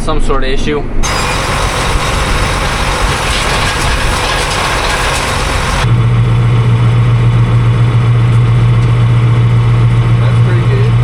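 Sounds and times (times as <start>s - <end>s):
hay baler gears and chains clattering: 1.0s - 5.9s
tractor engine hum: 1.0s - 6.1s.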